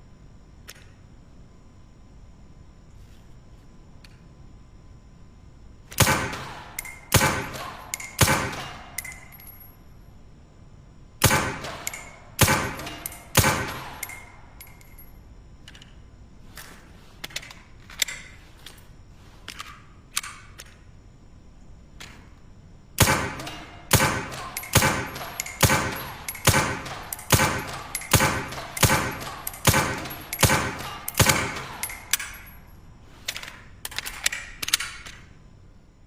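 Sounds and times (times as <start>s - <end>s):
suppressed pistol shots: 5.9s - 9.3s, 11.2s - 14.3s, 23.0s - 32.4s.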